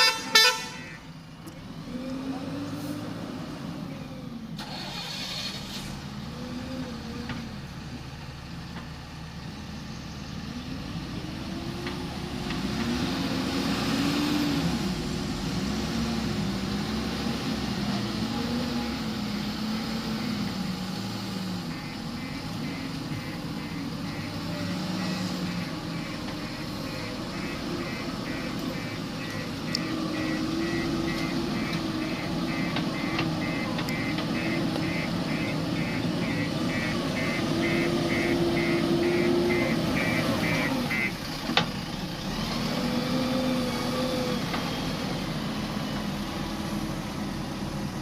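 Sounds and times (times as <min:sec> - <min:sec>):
diesel engine revving: 0:00.0 - 0:48.0
rapid repeating beep: 0:21.7 - 0:41.1.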